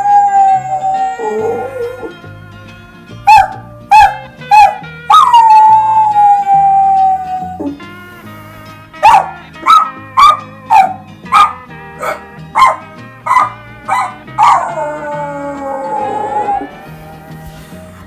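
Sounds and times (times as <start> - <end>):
person imitating dog howling: 0.0 - 2.2, 4.0 - 7.8, 13.9 - 17.3
light background music: 0.0 - 18.0
person imitating yapping barks: 3.3 - 7.8, 8.9 - 17.2.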